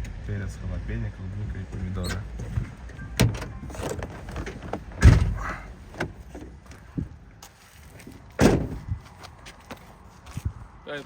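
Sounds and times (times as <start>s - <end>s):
heavy thump: 4.9s - 6.2s, 8.4s - 8.8s.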